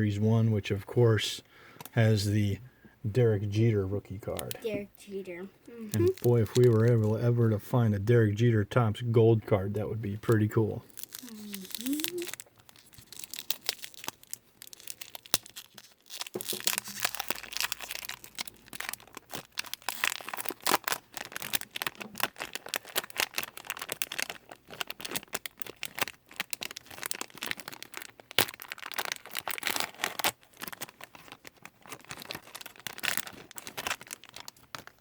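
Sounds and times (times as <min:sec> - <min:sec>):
wrapper crinkling: 0:05.9 - 0:07.2, 0:10.8 - 0:35.0.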